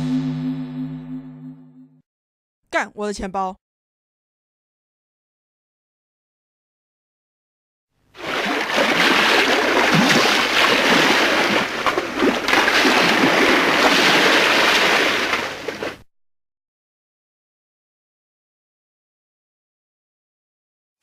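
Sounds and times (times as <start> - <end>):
water splashing and sloshing: 8.1 - 16.0.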